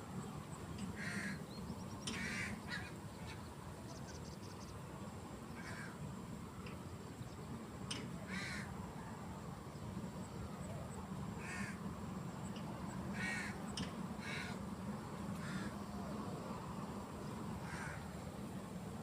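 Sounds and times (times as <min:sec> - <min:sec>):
crows cawing: 0:01.0 - 0:01.4, 0:02.1 - 0:02.9, 0:05.6 - 0:06.0, 0:08.3 - 0:08.8, 0:11.4 - 0:11.8, 0:13.1 - 0:13.6, 0:14.2 - 0:14.6, 0:15.4 - 0:15.8, 0:17.6 - 0:18.1.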